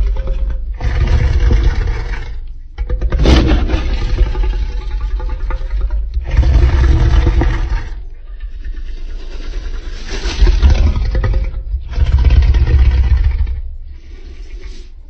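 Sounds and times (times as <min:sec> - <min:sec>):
deep growling monster roar: 0:00.0 - 0:13.7
sharp crack: 0:03.2 - 0:04.2.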